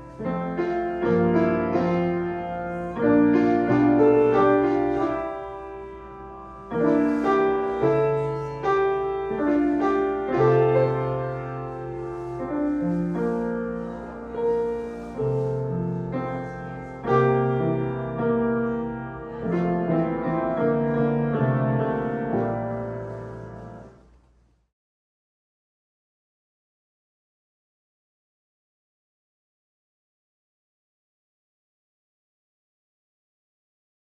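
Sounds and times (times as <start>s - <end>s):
piano rattle: 0.0s - 23.9s
slow piano chords: 0.0s - 24.2s.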